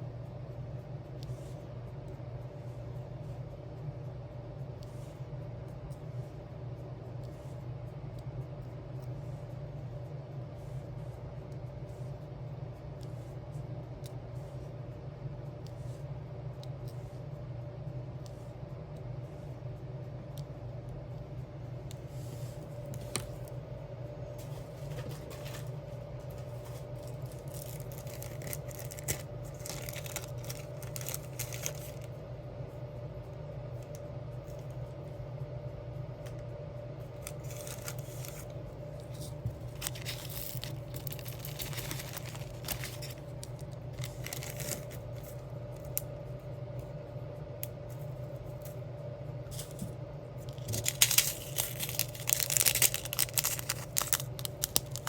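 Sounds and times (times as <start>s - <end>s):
plastic film crinkling: 22.9s - 23.5s, 24.5s - 32.1s, 37.1s - 46.0s, 50.4s - 55.0s.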